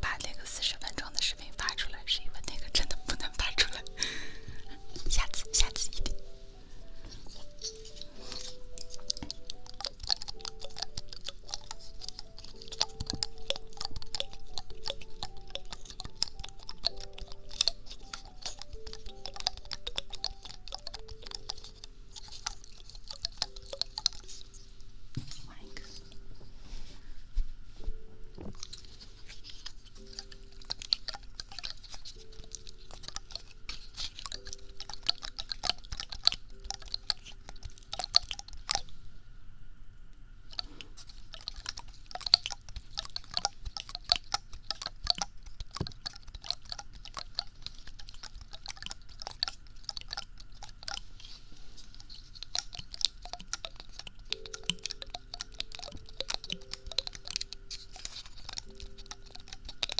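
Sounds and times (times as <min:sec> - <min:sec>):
crisp clicking and crackling: 0:00.0 - 0:26.6, 0:27.6 - 0:39.0, 0:40.2 - 0:59.9
faint background music: 0:00.0 - 0:59.9.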